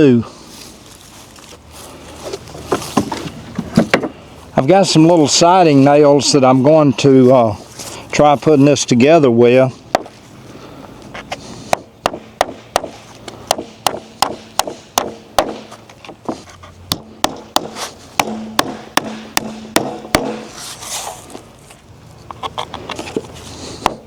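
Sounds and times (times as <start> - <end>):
hammer striking nails into wood: 11.7 - 15.7, 16.9 - 20.5.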